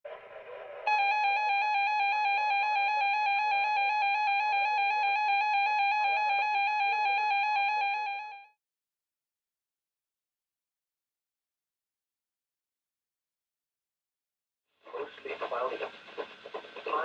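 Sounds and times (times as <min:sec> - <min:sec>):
two-tone alert tone: 0:00.9 - 0:08.5.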